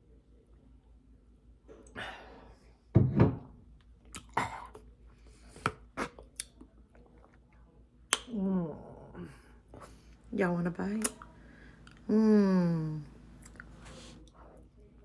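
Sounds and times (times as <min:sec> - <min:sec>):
person chewing with clicks and smacks: 0:03.9 - 0:08.4, 0:10.9 - 0:12.1, 0:13.3 - 0:14.6.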